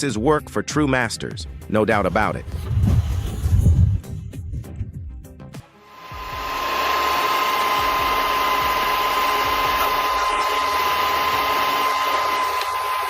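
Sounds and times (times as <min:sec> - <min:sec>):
machinery running with whine: 0:05.8 - 0:13.0.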